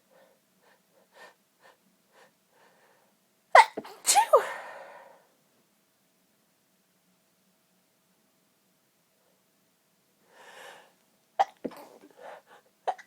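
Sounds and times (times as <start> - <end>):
faint quick breaths: 0.0 - 3.2, 10.2 - 11.0, 11.7 - 12.7
woman sneezing: 3.6 - 4.8.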